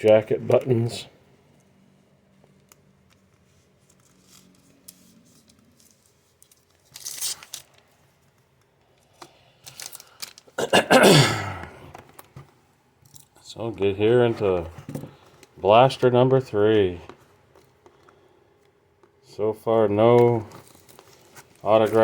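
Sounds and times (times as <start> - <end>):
card packaging tearing: 4.0 - 7.8.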